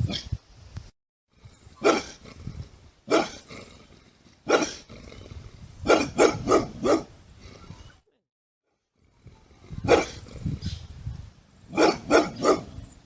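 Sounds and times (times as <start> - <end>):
dog barking deeply: 1.8 - 2.2, 3.1 - 3.4, 4.4 - 4.9, 5.8 - 7.1, 9.7 - 10.6, 11.7 - 12.9.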